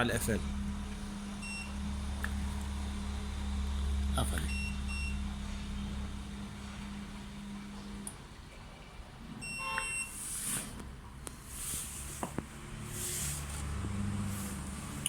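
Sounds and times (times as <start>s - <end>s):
low hum: 0.0s - 10.1s.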